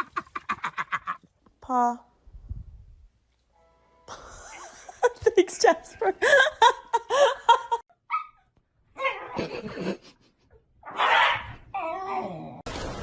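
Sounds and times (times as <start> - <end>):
dog whining and yipping: 8.1 - 8.4, 10.9 - 12.4.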